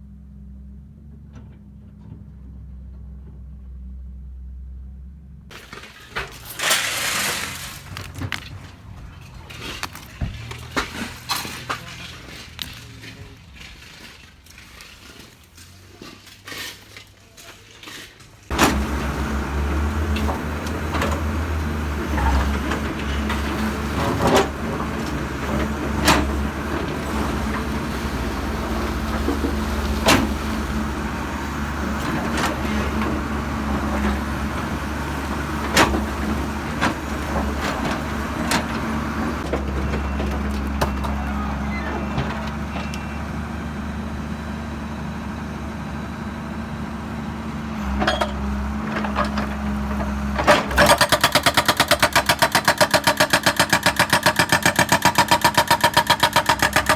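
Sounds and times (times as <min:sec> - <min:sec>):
diesel engine running: 0:18.5 - 0:56.9.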